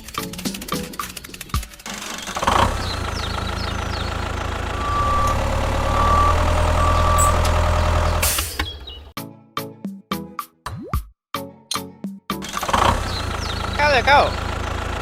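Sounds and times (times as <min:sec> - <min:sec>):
heavy vehicle engine idling: 0:01.9 - 0:09.1, 0:12.6 - 0:15.0
short beeps: 0:04.8 - 0:07.5.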